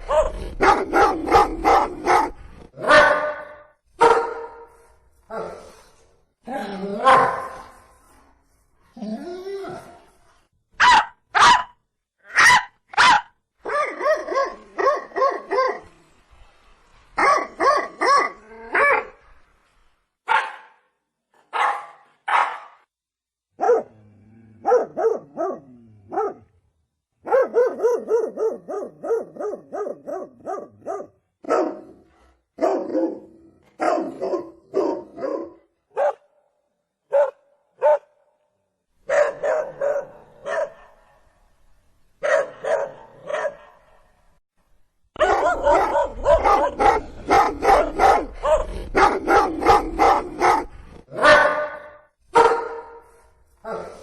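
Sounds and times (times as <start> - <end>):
dog barking: 0.0 - 4.8, 7.0 - 7.7, 10.8 - 15.8, 17.2 - 19.1, 20.3 - 20.9, 21.5 - 22.8, 23.6 - 24.0, 24.6 - 26.5, 27.2 - 32.0, 32.6 - 36.3, 37.1 - 38.2, 39.1 - 41.2, 42.2 - 44.0, 45.2 - 54.0.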